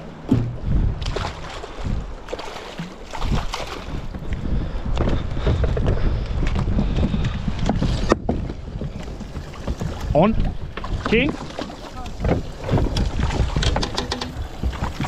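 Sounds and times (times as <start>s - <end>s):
wind buffeting microphone: 0.0s - 15.0s
sharp clicks and knocks: 12.8s - 15.0s.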